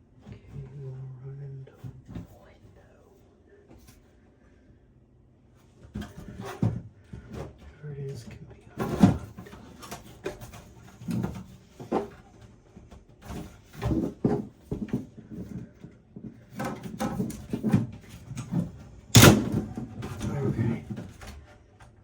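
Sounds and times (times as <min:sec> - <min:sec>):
hardware knocking and rattling in pc case: 0:13.0 - 0:21.4.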